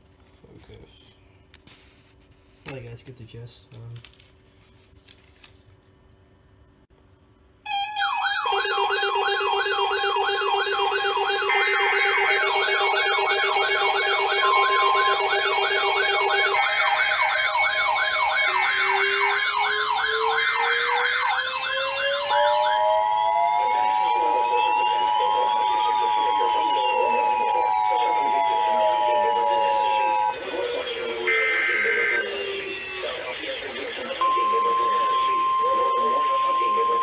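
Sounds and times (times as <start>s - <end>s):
fast warbling alert tone: 7.7s - 37.0s
rising siren glide: 7.7s - 37.0s
steady high alert tones: 7.7s - 37.0s.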